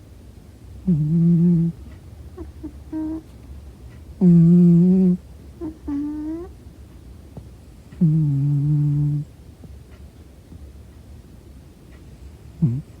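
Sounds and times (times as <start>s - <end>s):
cat snoring: 0.8s - 1.8s, 2.4s - 3.3s, 4.2s - 6.5s, 7.9s - 9.3s, 12.5s - 13.0s.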